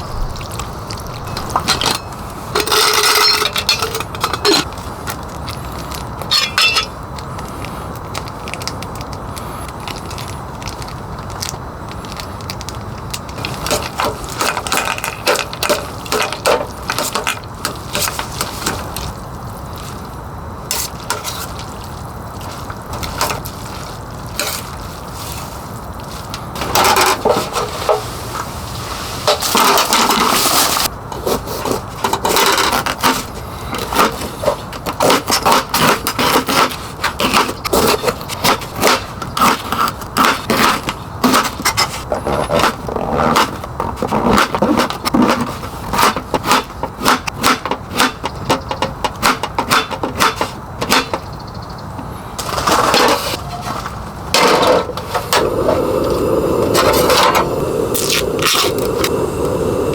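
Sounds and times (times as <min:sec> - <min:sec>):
utensil scraping cookware: 0:00.0 - 0:05.6, 0:06.2 - 0:07.0
steady noisy background: 0:00.0 - 0:59.9.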